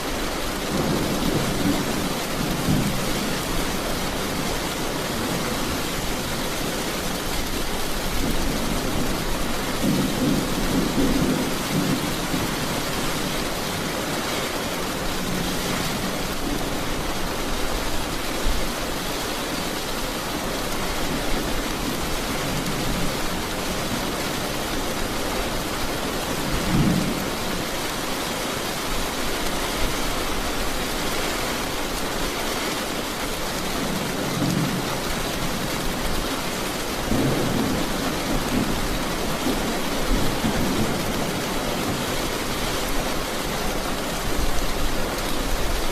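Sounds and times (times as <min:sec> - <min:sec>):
steady rain falling: 0:00.0 - 0:45.9
thunder rumbling: 0:00.6 - 0:17.0.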